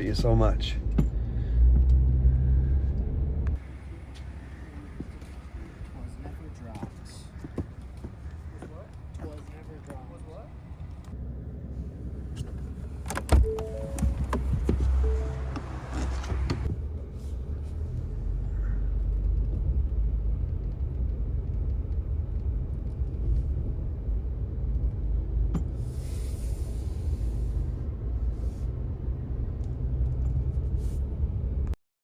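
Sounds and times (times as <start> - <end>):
car cabin rumble: 11.8 - 20.0.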